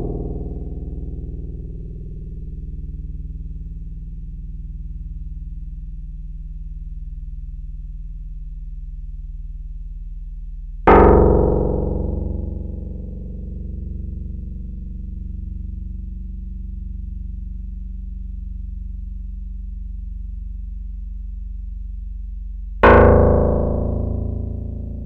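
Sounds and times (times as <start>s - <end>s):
synthesizer bass drone: 0.0s - 3.3s, 10.9s - 25.0s.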